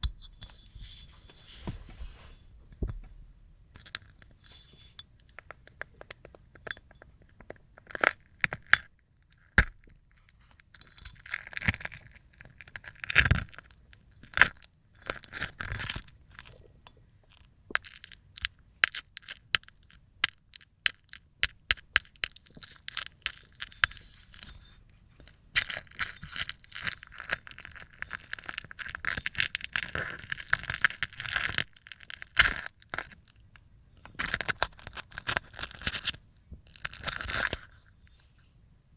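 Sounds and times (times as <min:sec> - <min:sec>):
slime film peeling and crackling: 0:25.6 - 0:33.4, 0:34.2 - 0:38.2.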